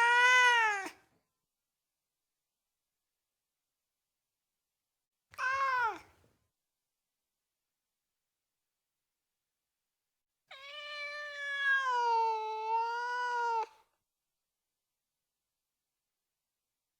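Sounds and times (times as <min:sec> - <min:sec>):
cat meowing: 0:05.4 - 0:06.1, 0:10.5 - 0:13.8.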